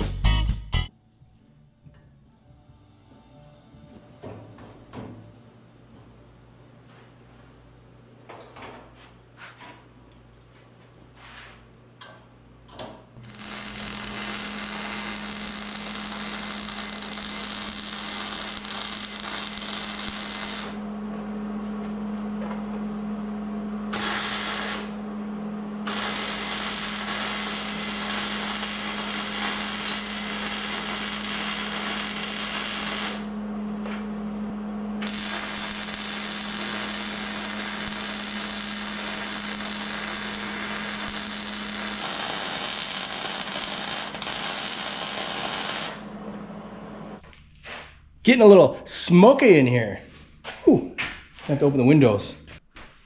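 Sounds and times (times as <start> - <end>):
welding arc crackling and buzzing: 13.2 - 20.9, 23.9 - 25.0, 25.8 - 33.4, 35.0 - 46.2.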